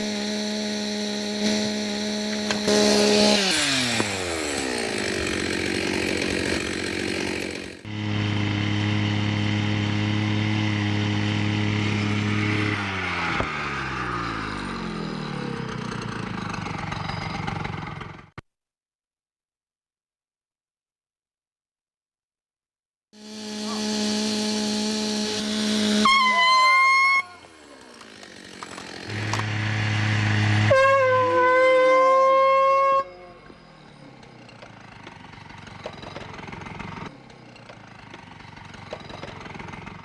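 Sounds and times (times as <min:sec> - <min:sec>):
chainsaw revving and idling: 0:00.0 - 0:18.3, 0:23.2 - 0:31.2.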